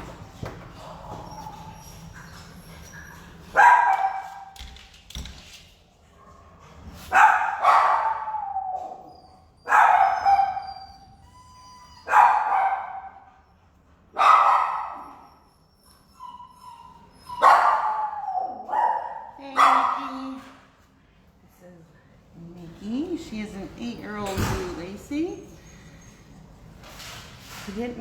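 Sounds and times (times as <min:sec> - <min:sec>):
dog barking loudly: 0:03.6 - 0:04.4, 0:07.1 - 0:08.4, 0:09.7 - 0:10.6, 0:12.1 - 0:13.1, 0:14.2 - 0:15.1, 0:17.4 - 0:20.2.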